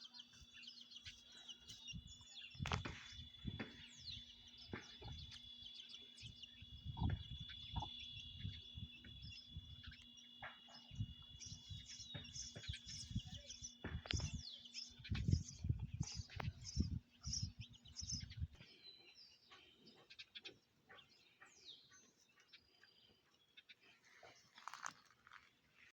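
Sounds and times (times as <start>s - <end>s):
birds chirping and singing: 0.0s - 25.9s
low rumbling thumps: 6.7s - 9.8s.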